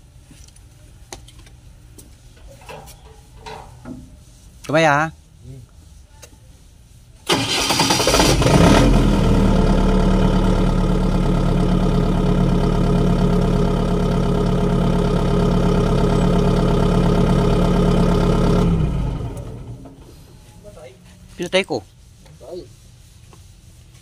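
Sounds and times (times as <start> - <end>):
generator engine starting and running: 7.3 - 20.6.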